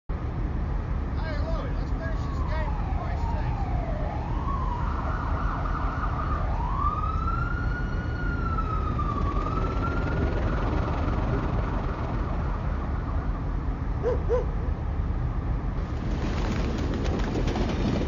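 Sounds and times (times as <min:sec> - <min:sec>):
city traffic rumble: 0:00.1 - 0:18.0
siren wailing: 0:01.9 - 0:14.4.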